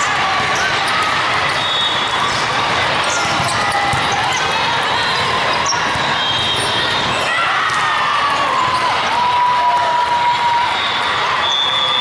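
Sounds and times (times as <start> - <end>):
many voices mixing: 0.0 - 12.0
sneakers squeaking on floor: 0.5 - 7.8
balls struck and bouncing: 3.0 - 4.4.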